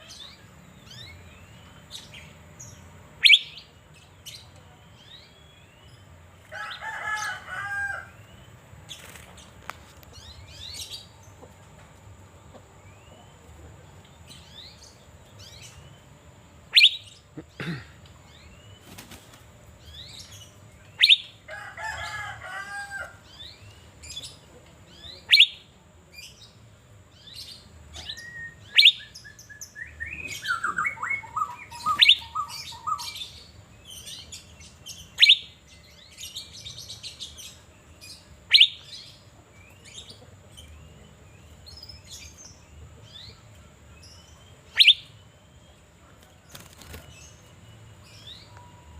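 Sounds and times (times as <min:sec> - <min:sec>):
bird chirps and warbling: 0:00.0 - 0:09.2, 0:16.7 - 0:17.3, 0:19.8 - 0:26.5, 0:27.2 - 0:43.4, 0:44.0 - 0:45.7
bird singing falling whistle: 0:03.2 - 0:03.6, 0:16.8 - 0:17.1, 0:30.6 - 0:32.6, 0:38.5 - 0:38.9, 0:44.7 - 0:45.2.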